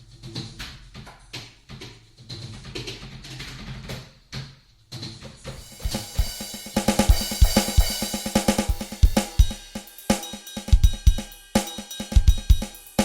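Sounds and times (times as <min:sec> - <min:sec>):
light drum hits: 0:05.5 - 0:09.7
drum kit groove: 0:05.5 - 0:13.0.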